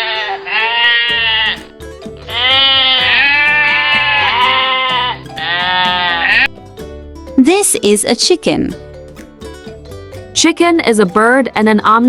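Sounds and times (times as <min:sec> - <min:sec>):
sheep bleating: 0:00.0 - 0:06.5
background music: 0:00.0 - 0:12.0.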